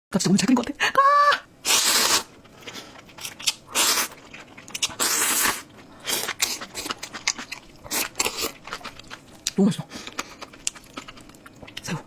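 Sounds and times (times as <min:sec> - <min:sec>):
person slurping noodles: 0:01.6 - 0:02.3, 0:03.2 - 0:07.0
mouth and eating noises: 0:01.7 - 0:12.0.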